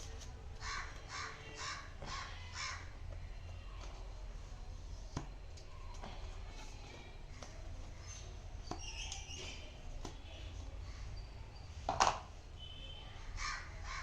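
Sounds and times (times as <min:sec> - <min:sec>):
crow cawing: 0:00.6 - 0:02.9, 0:13.4 - 0:14.0
birds chirping: 0:07.3 - 0:11.9.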